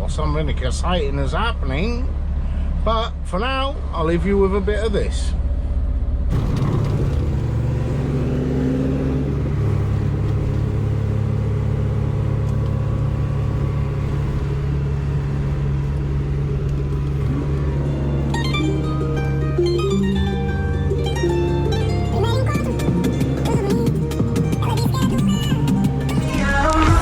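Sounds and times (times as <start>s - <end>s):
lorry diesel engine droning: 0.0s - 27.0s
plucked-string music: 6.7s - 27.0s.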